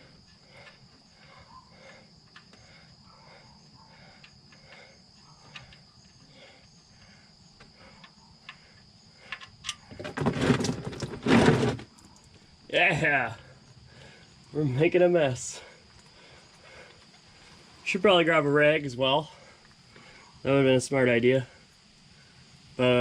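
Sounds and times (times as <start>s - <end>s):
insects chirring: 0.0s - 23.0s
quiet clicks and knocks: 4.2s - 6.3s, 7.6s - 10.1s.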